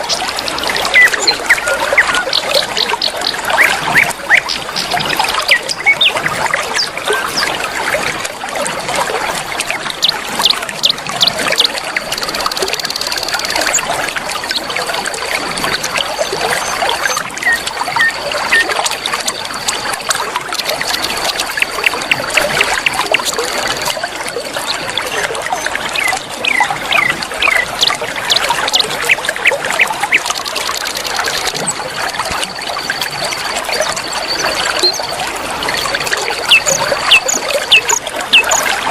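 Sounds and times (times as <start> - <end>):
birds chirping: 0.0 - 7.6, 9.7 - 13.9, 24.8 - 31.7, 35.8 - 38.9
river water trickling and splashing: 0.0 - 38.9.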